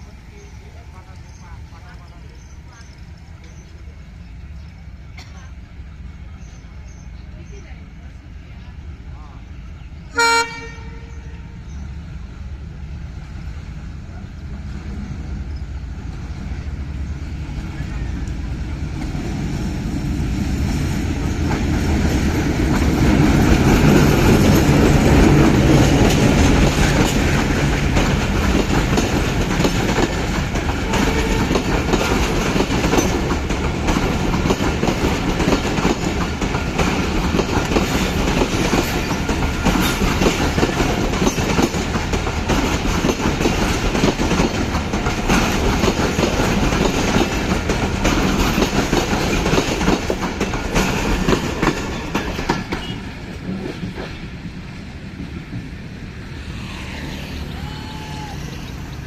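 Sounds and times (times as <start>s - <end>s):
train wheels clickety-clack: 14.5s - 58.5s.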